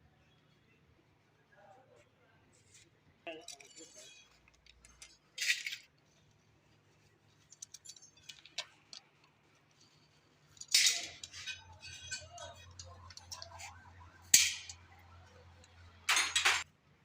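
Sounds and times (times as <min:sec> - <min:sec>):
light metallic clinks: 0:09.7 - 0:16.6.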